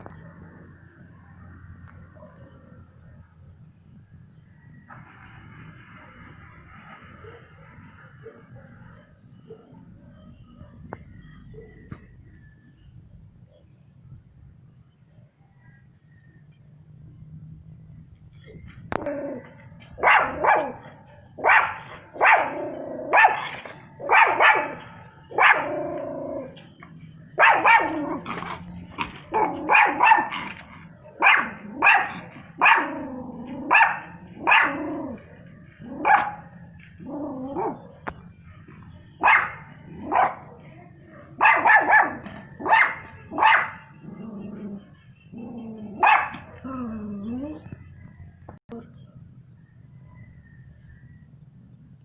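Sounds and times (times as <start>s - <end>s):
small dog barking: 19.0s - 26.6s, 27.4s - 38.6s, 39.2s - 47.7s.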